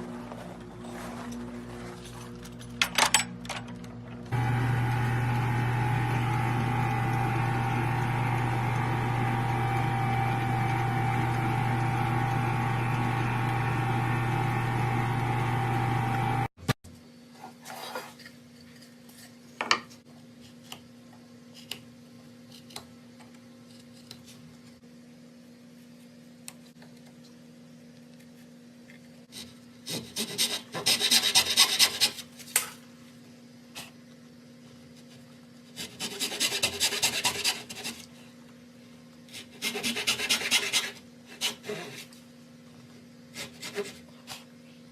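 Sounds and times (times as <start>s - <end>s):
machine humming and whining: 3.4s - 16.5s.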